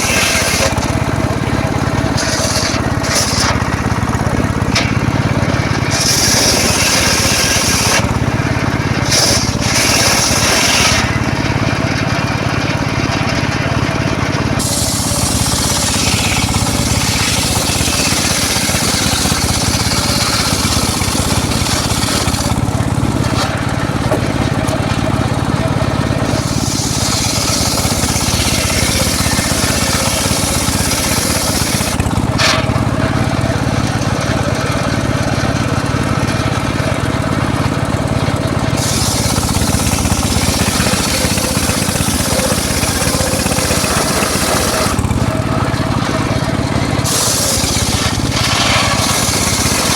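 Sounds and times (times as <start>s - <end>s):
circular saw running: 0.0s - 49.9s
saw blade cutting wood: 0.0s - 49.9s.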